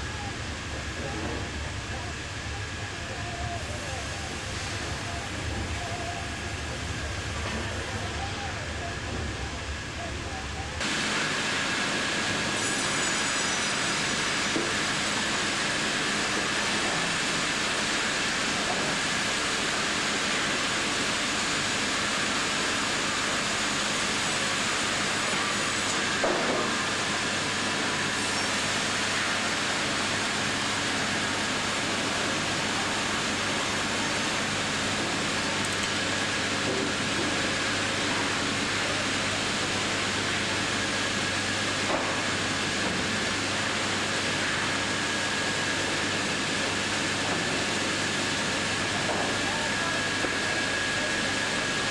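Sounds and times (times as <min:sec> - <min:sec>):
bandsaw machinery running: 0:10.8 - 0:51.9.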